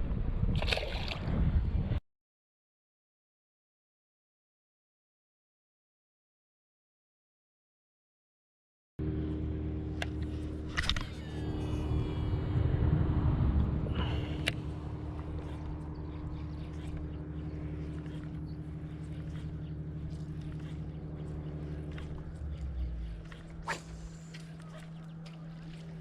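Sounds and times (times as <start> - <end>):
boat engine humming: 9.0 - 26.0.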